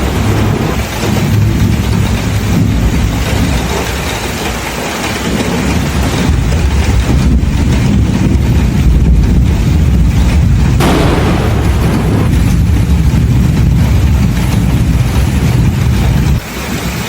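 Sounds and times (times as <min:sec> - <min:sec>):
low thunder rumble: 0:05.7 - 0:16.4
sharp thunderclap: 0:10.8 - 0:13.9.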